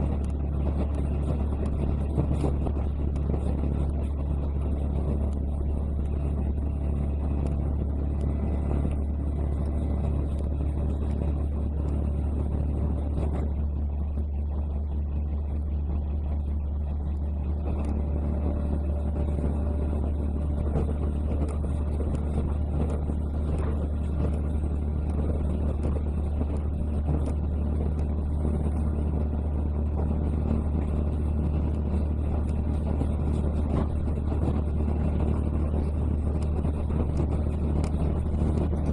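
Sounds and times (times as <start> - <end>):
diesel railcar rumbling on track: 0.0 - 38.9
faint clicks: 17.0 - 18.6.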